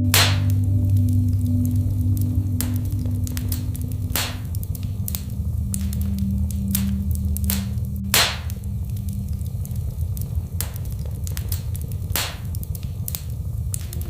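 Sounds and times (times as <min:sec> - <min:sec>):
fire crackling and popping: 0:00.0 - 0:14.0.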